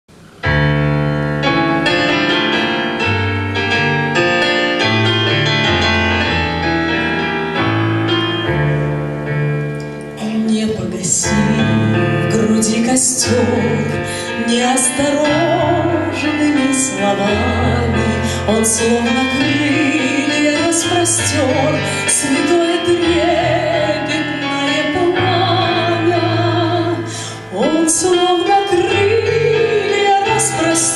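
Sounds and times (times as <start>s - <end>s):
grand piano playing: 0.1s - 30.9s
woman singing: 10.2s - 30.9s.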